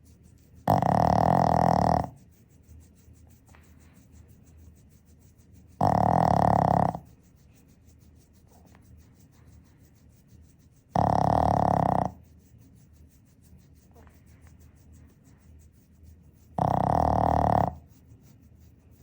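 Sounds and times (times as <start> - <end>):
dog snoring: 0.6 - 2.3, 5.7 - 7.2, 10.9 - 12.3, 16.5 - 18.0.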